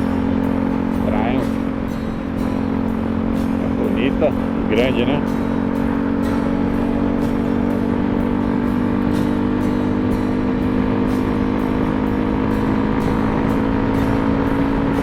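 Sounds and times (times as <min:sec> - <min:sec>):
motorcycle engine at high revs: 0:00.0 - 0:15.0.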